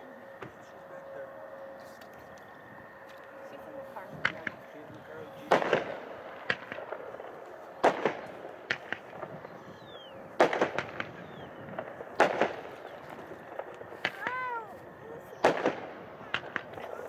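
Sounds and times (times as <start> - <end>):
fireworks booming: 4.0 - 17.0
small firework pops: 5.5 - 14.5, 15.4 - 16.9.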